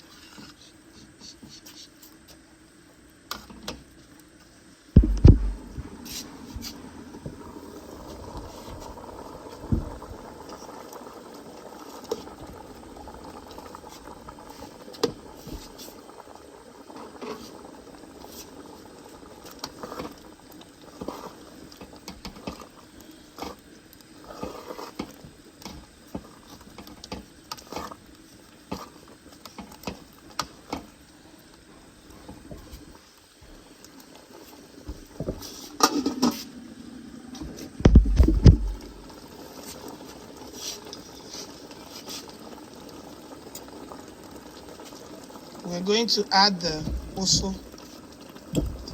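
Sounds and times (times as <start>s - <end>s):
soup bubbling in a pot: 1.8s - 48.9s
knocks: 5.0s - 5.8s, 37.8s - 39.0s
low thud: 5.0s - 6.2s, 37.8s - 39.0s.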